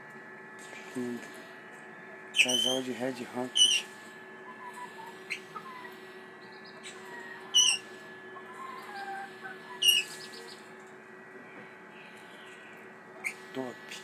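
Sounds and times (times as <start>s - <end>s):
faint steady hum: 0.0s - 14.0s
parrots calling: 2.4s - 2.9s, 3.5s - 10.7s, 12.1s - 13.5s.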